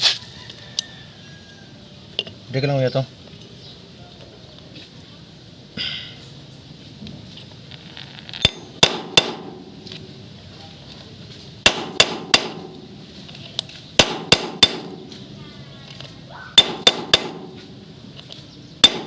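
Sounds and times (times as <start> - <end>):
hammer striking metal: 8.4 - 9.8, 11.6 - 12.8, 14.0 - 15.2, 16.6 - 17.8, 18.8 - 19.0.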